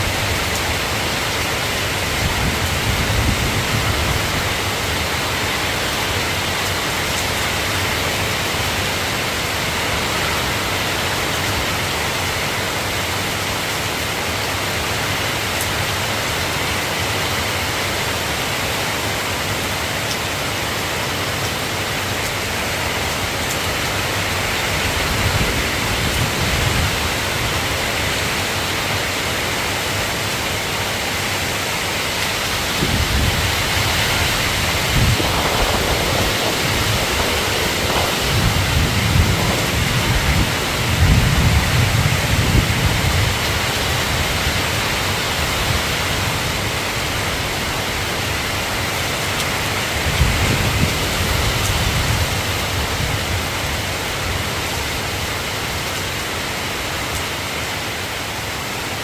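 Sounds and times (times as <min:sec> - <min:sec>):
rain hiss: 0:00.0 - 0:59.0
low rumbling: 0:32.8 - 0:43.0.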